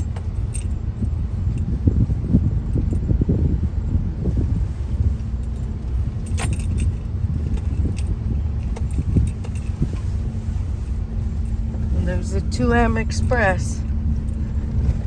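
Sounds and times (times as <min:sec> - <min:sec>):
metallic jingling rattles: 0:00.0 - 0:01.8, 0:05.3 - 0:15.0
car road noise rumble: 0:00.0 - 0:15.0
steady hum: 0:00.0 - 0:15.0.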